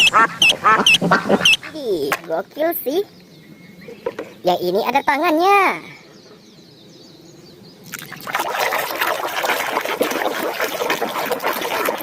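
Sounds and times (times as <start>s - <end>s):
water trickling and splashing: 7.9s - 12.0s.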